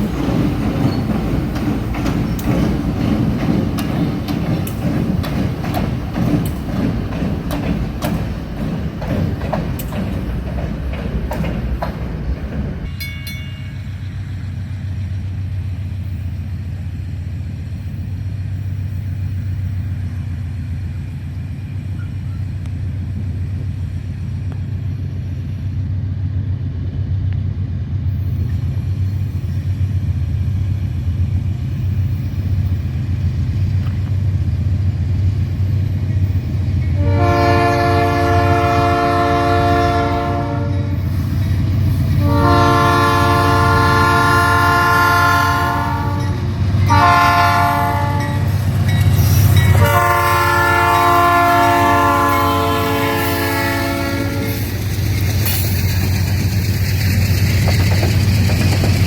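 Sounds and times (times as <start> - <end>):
diesel locomotive rumble: 0.0 - 59.0
locomotive air horn blasts: 37.0 - 41.1, 42.2 - 48.6, 49.7 - 54.7.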